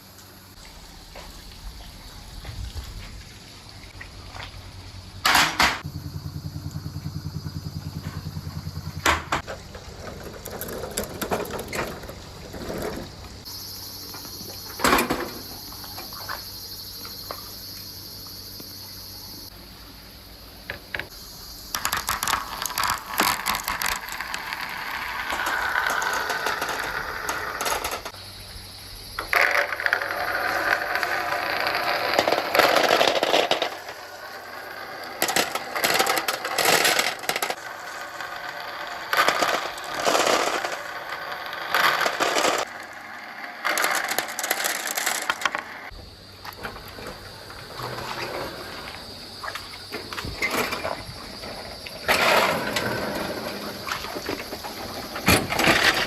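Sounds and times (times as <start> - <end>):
marbles rolling and clattering: 7.6 - 13.6, 20.7 - 28.2, 29.2 - 46.0, 50.1 - 56.0.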